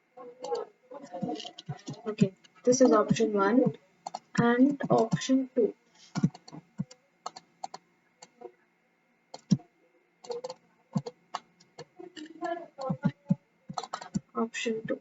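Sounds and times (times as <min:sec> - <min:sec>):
typing on computer keyboard: 0:06.2 - 0:07.8, 0:12.8 - 0:14.2.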